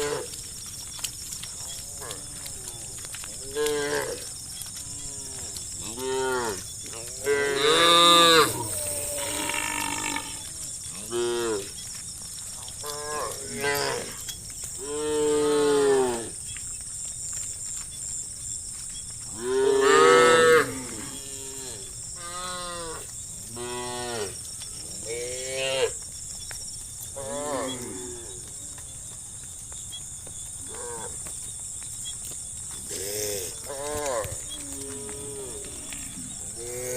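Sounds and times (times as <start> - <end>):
cows mooing: 1.7 - 11.7, 19.4 - 23.0, 32.9 - 36.9.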